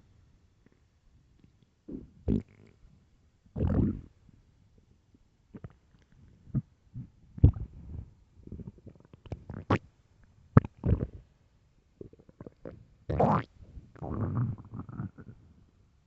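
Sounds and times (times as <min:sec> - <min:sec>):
stomach growling: 0:03.6 - 0:04.1, 0:06.5 - 0:07.8, 0:08.4 - 0:09.8, 0:10.6 - 0:11.2, 0:12.0 - 0:15.5.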